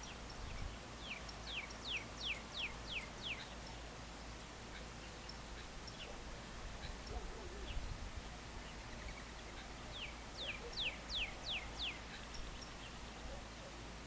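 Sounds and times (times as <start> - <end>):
bird whistling song: 0.0 - 3.5, 10.0 - 12.7
low background hiss: 0.0 - 14.0.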